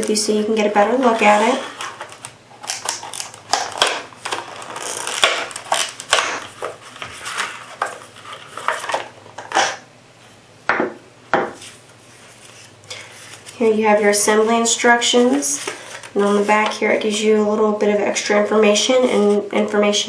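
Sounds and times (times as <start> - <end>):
packaging rustling and crinkling: 1.0 - 9.8.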